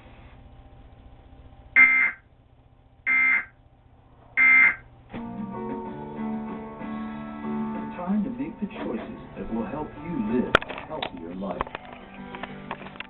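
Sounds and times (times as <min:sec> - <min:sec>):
low hum: 0:00.0 - 0:07.6
high-pitched data tone bursts: 0:01.8 - 0:02.2, 0:03.1 - 0:03.5, 0:04.4 - 0:04.8
guitar music from tv: 0:05.1 - 0:13.0.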